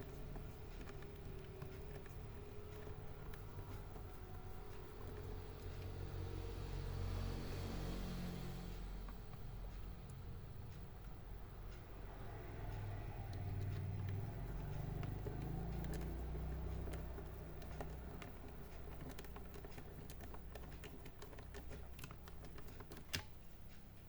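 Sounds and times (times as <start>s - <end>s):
laptop parts clicking and tapping: 0.0s - 6.2s, 12.5s - 24.0s.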